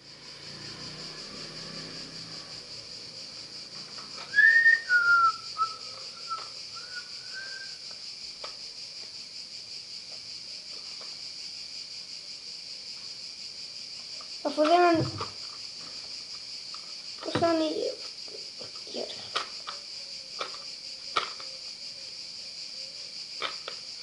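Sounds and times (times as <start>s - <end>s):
high-pitched hiss: 0.0s - 24.0s
person whistling: 4.3s - 7.8s.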